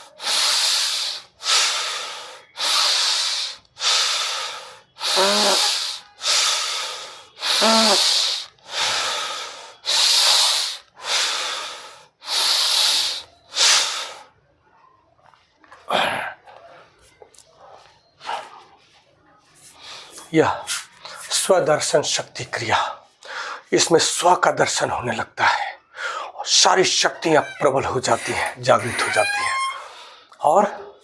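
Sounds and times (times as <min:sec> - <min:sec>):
forceful hissing breaths: 0:00.0 - 0:14.3
short voiced sound: 0:27.3 - 0:29.8.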